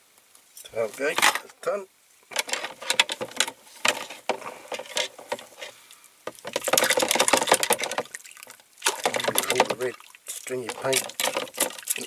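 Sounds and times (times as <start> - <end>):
wire brush scrubbing metal: 8.9 - 12.0.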